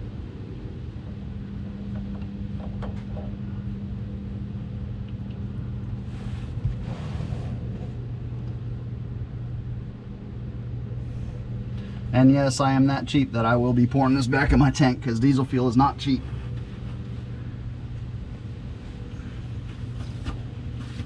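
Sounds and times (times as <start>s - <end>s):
low engine hum: 0.0s - 21.0s.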